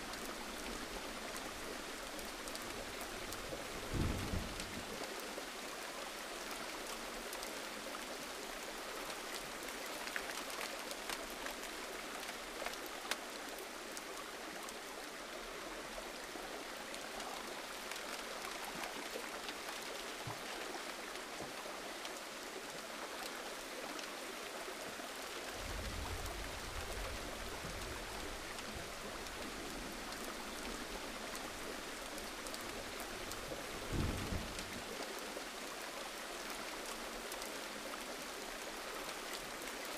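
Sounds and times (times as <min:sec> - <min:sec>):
raindrop ticks: 0:00.0 - 0:05.2, 0:09.0 - 0:14.8, 0:25.6 - 0:38.2
gentle rain hissing: 0:00.0 - 0:39.9.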